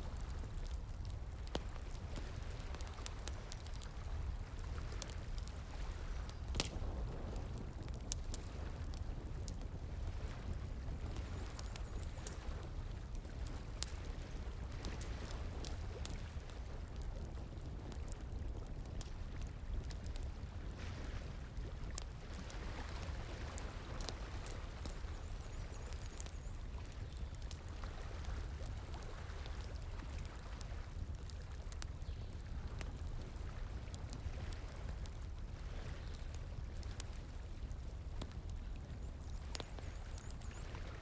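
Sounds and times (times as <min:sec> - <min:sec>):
wood fire crackling and popping: 0:00.0 - 0:41.0.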